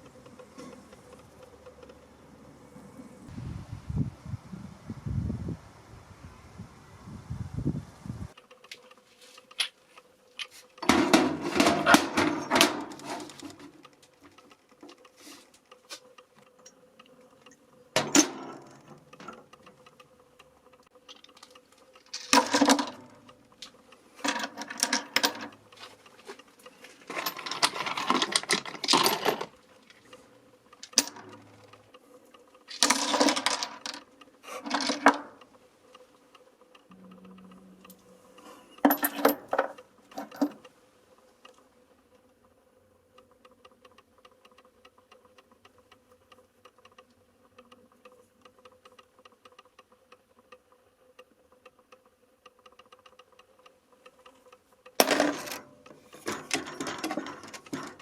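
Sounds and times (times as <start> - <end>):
metal pieces clinking: 22.2 - 23.0, 55.0 - 58.0.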